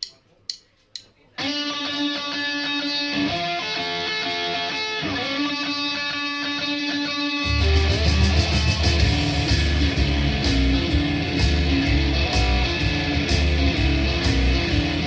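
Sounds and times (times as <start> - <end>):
electric guitar: 1.4 - 15.0
bass guitar: 7.4 - 15.0
drums: 7.4 - 15.0.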